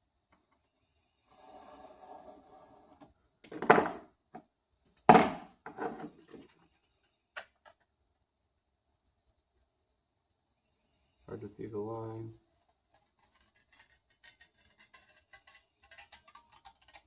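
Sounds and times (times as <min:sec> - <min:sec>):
objects scraping on work surface: 0:01.3 - 0:04.0, 0:05.6 - 0:06.7.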